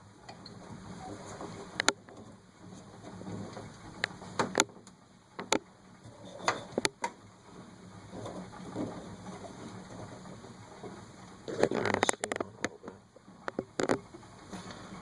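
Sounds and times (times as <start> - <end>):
sharp clicks and knocks: 1.4 - 2.3, 3.3 - 5.7, 6.4 - 7.2, 11.5 - 14.8.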